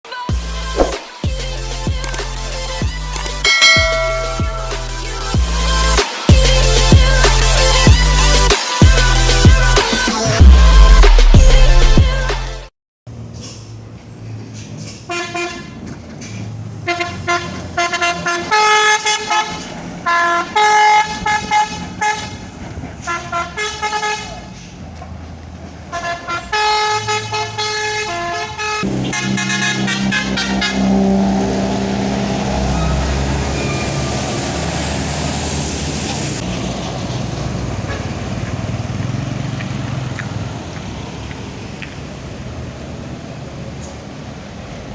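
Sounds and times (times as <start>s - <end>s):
heavy vehicle engine passing: 16.0s - 23.6s, 28.8s - 44.9s
musical air horn playing a tune: 26.0s - 31.7s.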